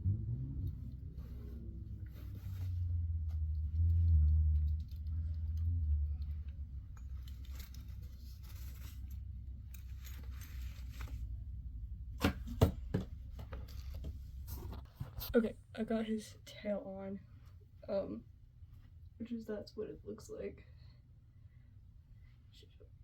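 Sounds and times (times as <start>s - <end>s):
low bumping and rubbing: 0.0s - 15.2s
fabric and fur rustling: 1.2s - 3.5s, 6.8s - 11.3s.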